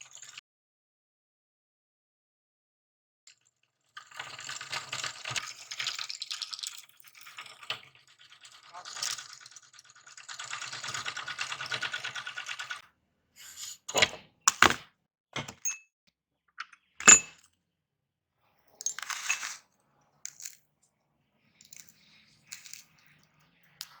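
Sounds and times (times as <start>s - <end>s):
hard objects clinking and clattering: 13.9s - 14.8s, 15.4s - 15.8s, 17.0s - 17.4s, 18.8s - 19.6s, 20.3s - 20.6s, 21.6s - 23.1s.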